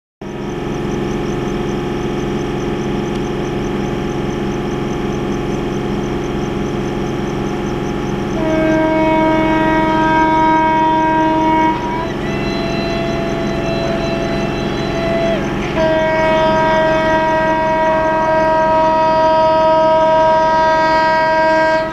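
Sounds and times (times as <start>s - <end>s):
train rumbling past: 0.3s - 21.9s
locomotive horn blast: 4.7s - 21.9s.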